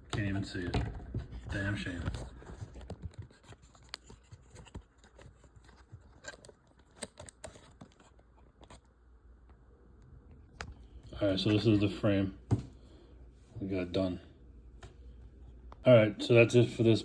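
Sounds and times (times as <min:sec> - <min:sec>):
small plastic parts clicking and scraping: 0:01.4 - 0:08.8.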